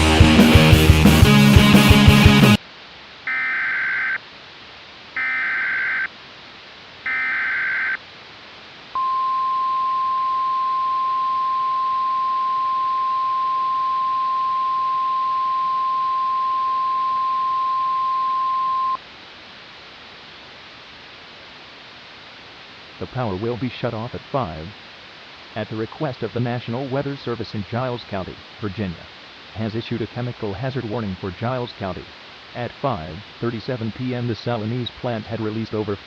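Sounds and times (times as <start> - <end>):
faint steady hiss: 2.5 - 36.0
buzzy digital bursts: 5.2 - 6.1.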